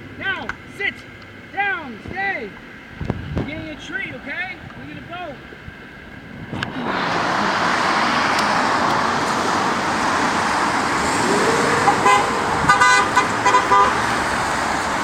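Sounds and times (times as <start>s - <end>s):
road traffic passing: 0.0s - 15.0s
car horn toots: 11.2s - 14.2s.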